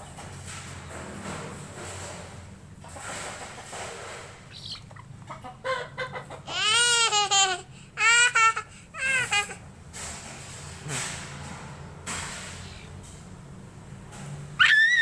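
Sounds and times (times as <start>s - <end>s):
chicken clucking: 2.8s - 6.6s
chicken squawking: 4.5s - 6.8s, 14.6s - 15.0s.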